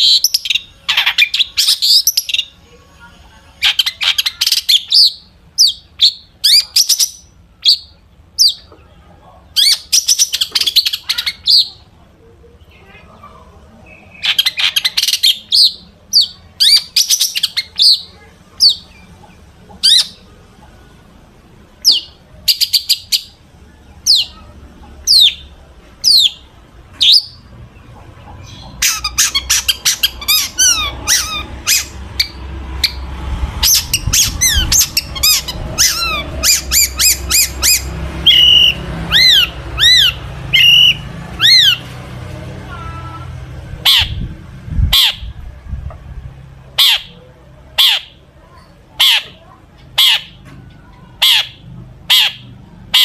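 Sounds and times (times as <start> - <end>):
shrike singing: 0.0 - 42.0.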